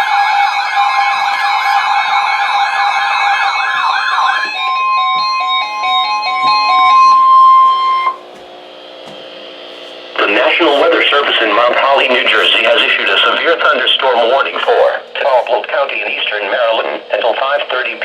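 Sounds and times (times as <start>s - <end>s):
fast wailing siren: 0.0s - 8.2s
steady alert warning tone: 1.5s - 8.8s, 10.0s - 17.1s
stepping run of lower notes: 2.2s - 15.6s.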